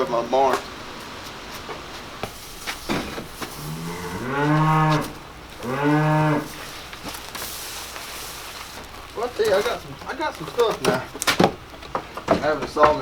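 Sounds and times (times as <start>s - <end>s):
cattle mooing: 2.9s - 7.4s.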